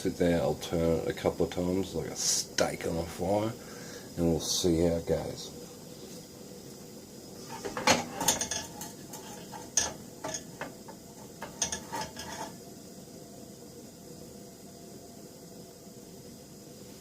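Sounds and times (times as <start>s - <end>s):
metal clinks and scrapes: 7.4s - 12.6s.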